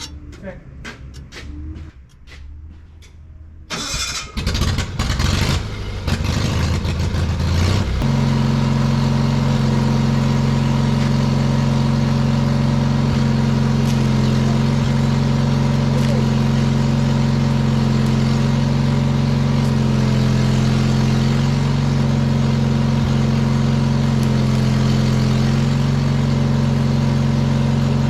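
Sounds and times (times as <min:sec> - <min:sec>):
generator engine starting and running: 0:00.0 - 0:28.0.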